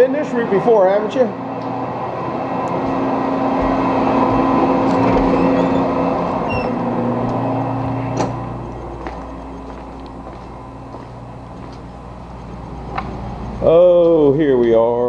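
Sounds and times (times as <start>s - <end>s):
metal lathe humming: 1.9s - 13.9s.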